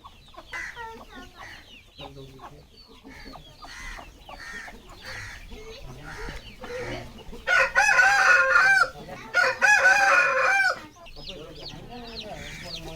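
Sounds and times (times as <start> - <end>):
chicken clucking: 0.0 - 12.9
rooster crowing: 6.8 - 10.8.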